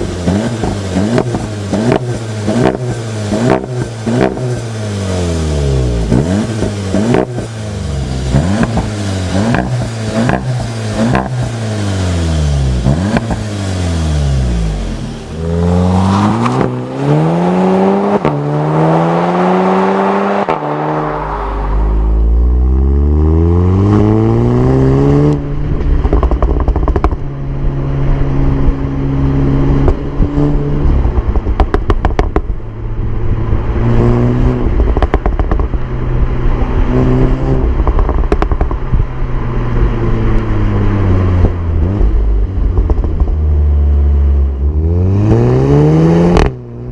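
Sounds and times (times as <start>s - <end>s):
car engine revving: 0.0s - 42.8s.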